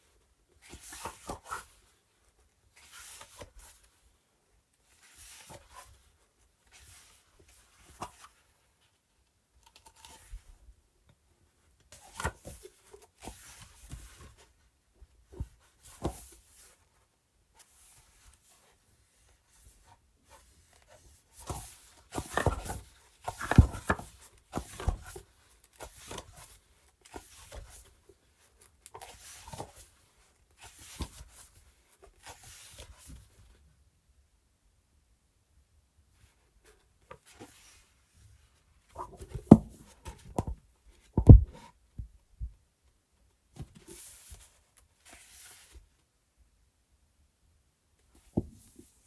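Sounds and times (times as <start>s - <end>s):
book pages flipping: 21.4s - 27.9s, 28.6s - 29.9s.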